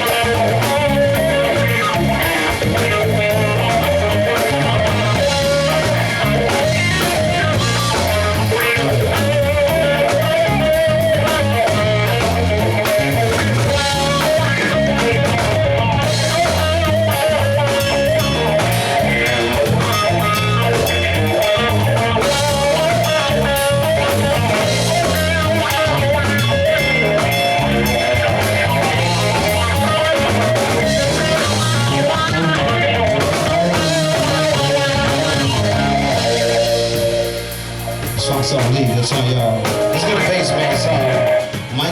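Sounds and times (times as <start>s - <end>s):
electric lead guitar: 0.0s - 41.9s
live blues-rock band: 0.0s - 41.9s.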